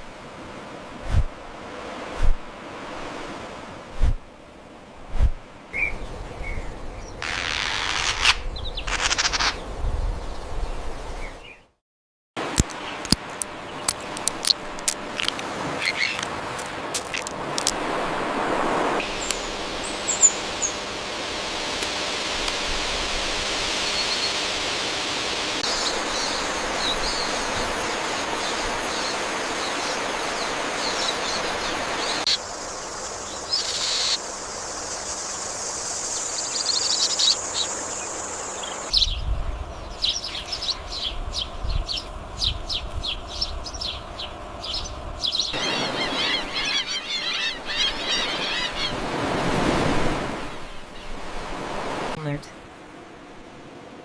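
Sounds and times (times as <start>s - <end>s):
steady background hiss: 12.4s - 54.0s
bird calls and chirps: 15.8s - 16.3s, 19.0s - 20.8s, 28.3s - 34.2s, 34.8s - 49.1s.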